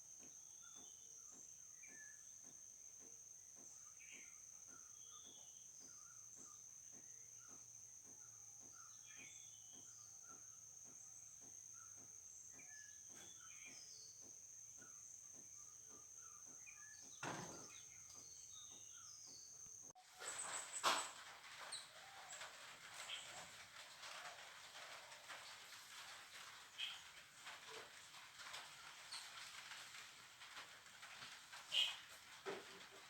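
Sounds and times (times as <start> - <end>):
small bird chirps: 26.7 - 27.1, 31.6 - 32.2.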